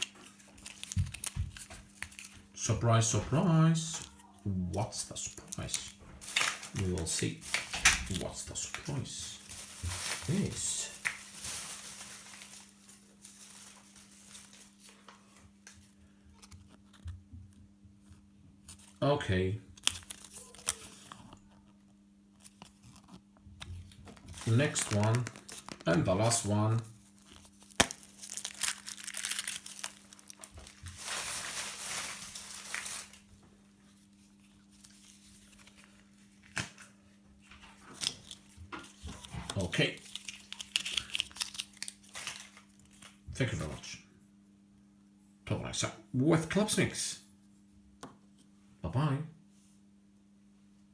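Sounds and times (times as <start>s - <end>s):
foil wrapper crinkling and tearing: 0.0s - 2.6s, 5.1s - 17.0s, 19.7s - 21.6s, 23.8s - 33.3s, 37.9s - 43.2s
low steady hum: 0.0s - 50.9s
plastic pieces clicking and rustling: 39.2s - 43.1s.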